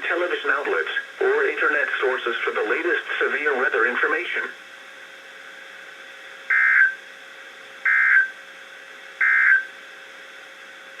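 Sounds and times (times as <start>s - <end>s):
radio hiss: 0.0s - 4.6s
steady low hum: 0.0s - 11.0s
two-tone digital squawks: 6.5s - 7.0s, 7.9s - 8.3s, 9.2s - 9.7s.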